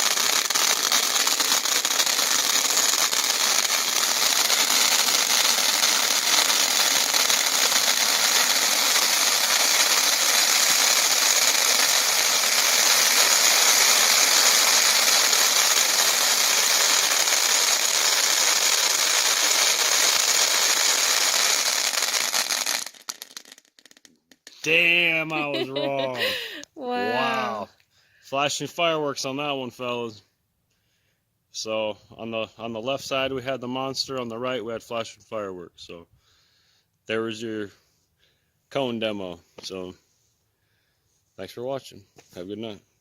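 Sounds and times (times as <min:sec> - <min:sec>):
fountain fireworks crackling: 0:00.0 - 0:27.6.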